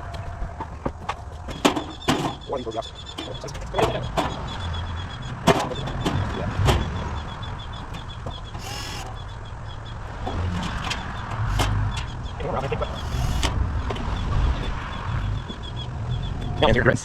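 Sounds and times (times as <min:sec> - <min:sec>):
metal panels knocking and clanking: 0:00.0 - 0:09.5.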